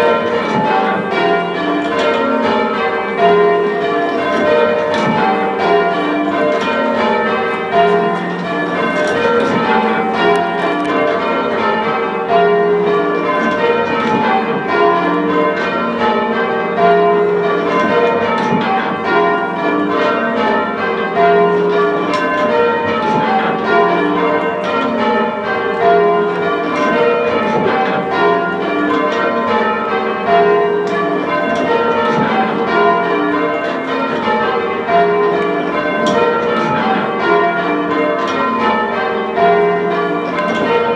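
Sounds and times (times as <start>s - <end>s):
church bells ringing: 0.0s - 40.9s.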